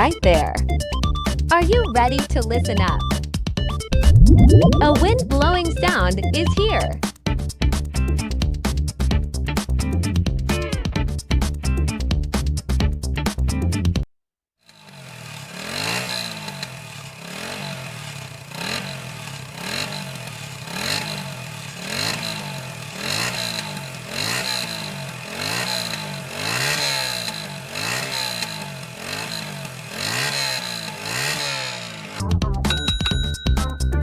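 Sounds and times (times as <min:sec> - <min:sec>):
motorcycle engine revving: 0:14.7 - 0:32.2.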